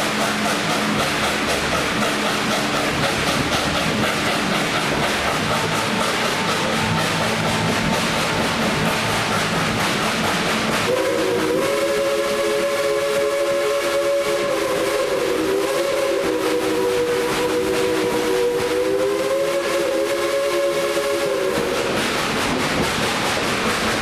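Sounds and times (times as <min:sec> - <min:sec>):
steam train rolling and clattering: 0:00.0 - 0:24.0
steam whistle chord: 0:10.9 - 0:21.8.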